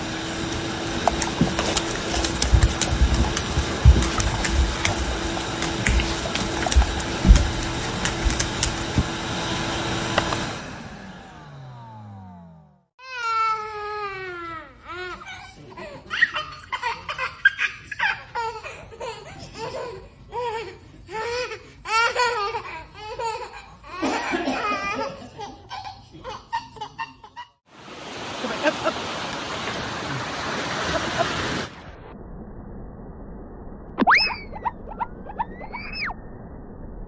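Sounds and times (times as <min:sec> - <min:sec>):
person laughing hard: 0:28.3 - 0:29.2, 0:30.0 - 0:31.7.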